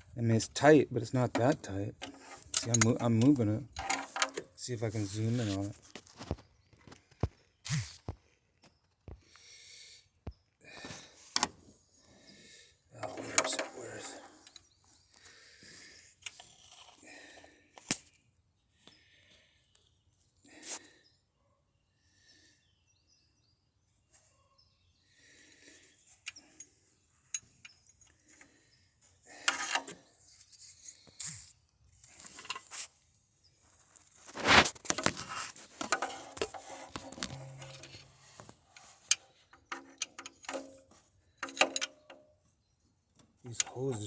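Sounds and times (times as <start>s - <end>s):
clicks and metallic clinks: 2.4s - 4.5s, 39.7s - 42.2s
rustling: 30.3s - 39.2s.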